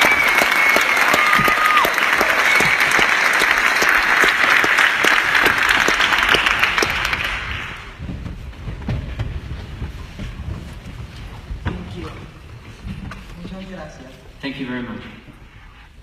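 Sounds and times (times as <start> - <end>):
audience applauding: 0.0 - 8.0
low rumble of hall: 1.2 - 16.0.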